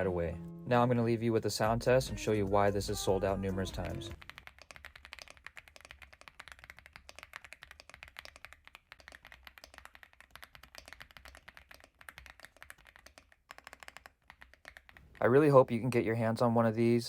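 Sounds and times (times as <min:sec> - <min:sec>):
mechanical keyboard typing: 0:03.8 - 0:15.3.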